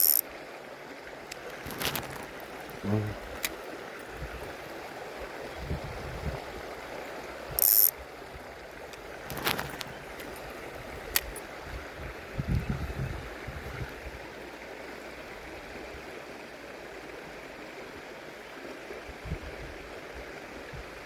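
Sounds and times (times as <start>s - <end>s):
high mechanical buzz: 0.0s - 0.2s
stream running over rocks: 0.0s - 21.0s.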